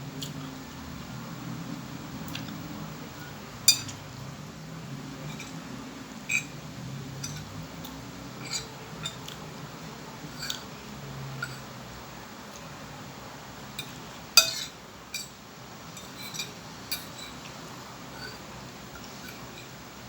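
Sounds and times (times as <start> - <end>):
cutlery clinking against plate: 3.2 - 4.0, 5.2 - 5.6, 6.3 - 6.6, 7.2 - 9.4, 10.3 - 10.7, 11.4 - 11.7, 13.8 - 18.4, 19.0 - 19.8.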